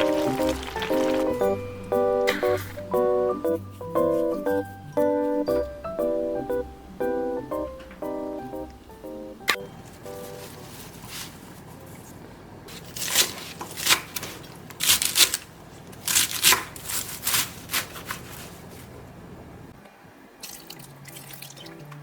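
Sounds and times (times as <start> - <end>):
liquid dripping and splashing: 0.0 - 1.6, 20.4 - 21.9.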